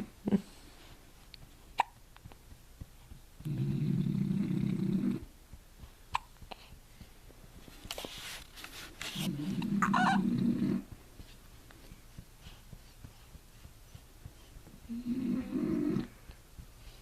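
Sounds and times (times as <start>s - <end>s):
pet breathy noises: 2.9s - 17.0s
pet low grumbling: 3.4s - 5.3s, 9.2s - 10.9s, 14.8s - 16.2s.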